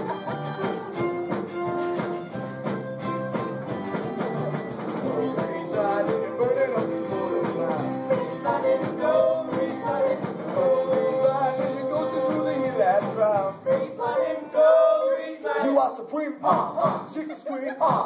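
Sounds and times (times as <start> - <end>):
upbeat rock and roll music: 0.0 - 18.0
person singing: 4.3 - 15.8.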